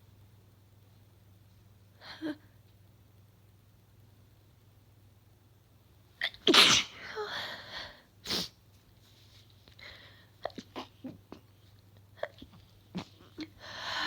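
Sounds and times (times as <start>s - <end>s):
woman sneezing: 6.2s - 7.3s.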